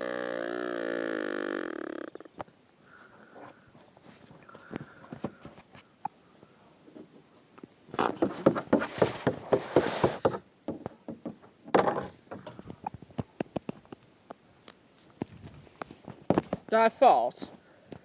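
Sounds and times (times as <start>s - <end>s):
sputtering fart: 0.0s - 2.4s.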